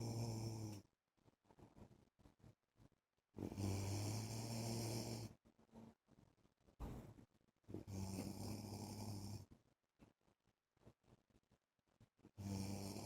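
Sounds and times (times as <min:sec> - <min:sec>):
man snoring: 0:00.0 - 0:00.8, 0:03.5 - 0:05.3, 0:07.9 - 0:09.4, 0:12.4 - 0:13.0.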